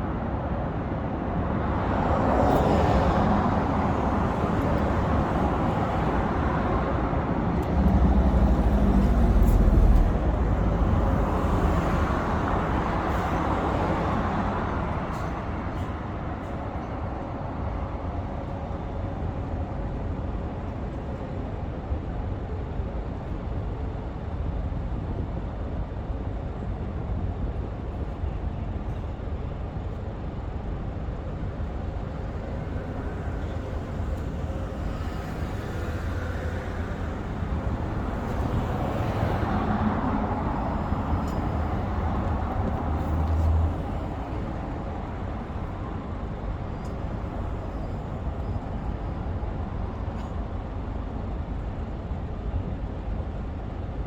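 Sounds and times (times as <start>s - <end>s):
traffic hum: 1.6s - 21.4s, 27.4s - 53.9s.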